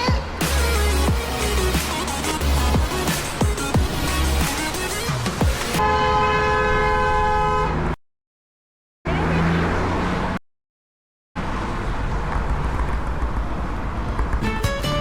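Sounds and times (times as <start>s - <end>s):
traffic and road noise: 0.0s - 8.0s, 9.0s - 10.4s, 11.4s - 15.0s
car horn blast: 5.8s - 7.9s.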